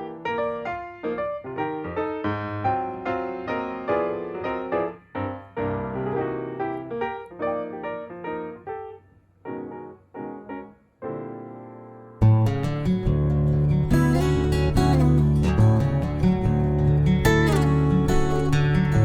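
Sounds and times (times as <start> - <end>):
piano music: 0.0 - 19.0.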